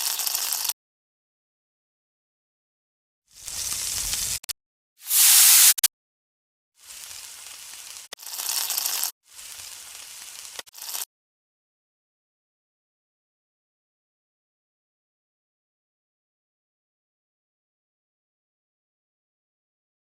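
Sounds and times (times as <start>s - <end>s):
bursts of hissing crackling noise: 3.3s - 5.9s, 6.8s - 11.1s.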